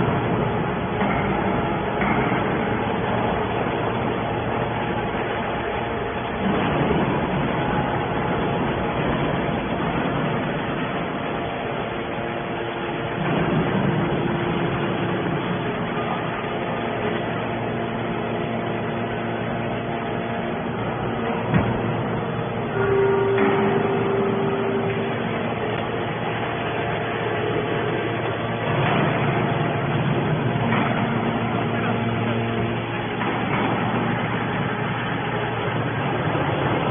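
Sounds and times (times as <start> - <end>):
faint steady hum: 0.0 - 36.9
hydraulic baler running: 0.0 - 36.9
held mechanical tone: 22.5 - 30.0.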